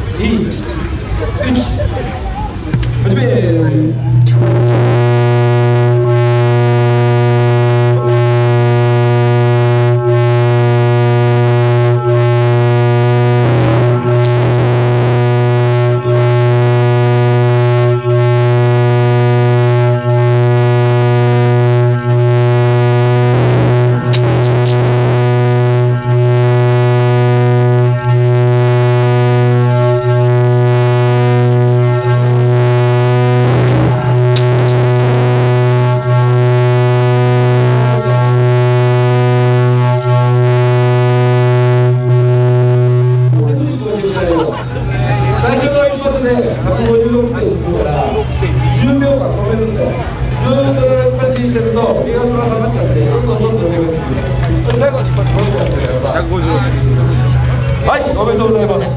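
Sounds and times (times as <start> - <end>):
loud low bass test tone: 0.0 - 58.9.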